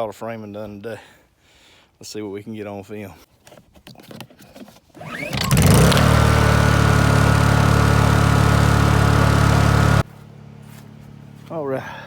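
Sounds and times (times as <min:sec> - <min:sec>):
motor running loud: 0:05.0 - 0:10.0.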